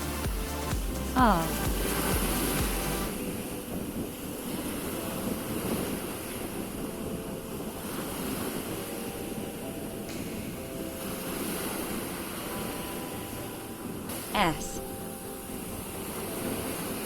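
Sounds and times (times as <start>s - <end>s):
waves washing onto shore: 0.0s - 14.3s
wind buffeting microphone: 2.1s - 14.1s.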